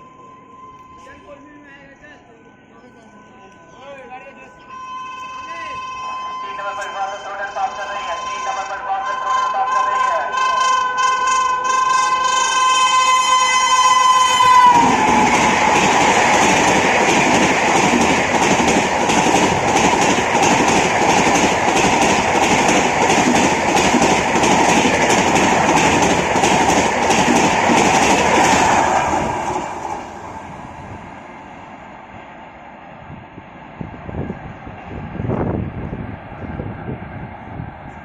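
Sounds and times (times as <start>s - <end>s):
low train rumble: 0.0s - 38.0s
train wheels clickety-clack: 14.8s - 29.6s.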